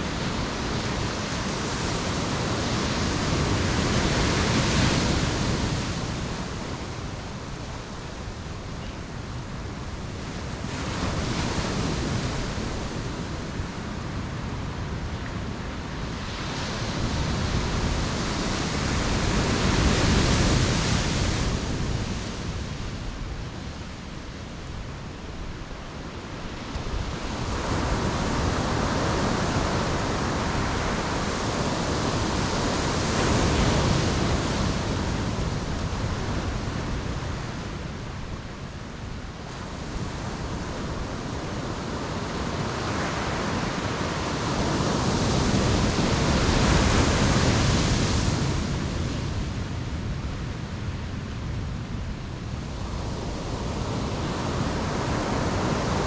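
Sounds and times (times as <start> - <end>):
sea waves breaking on beach: 25.3 - 51.2.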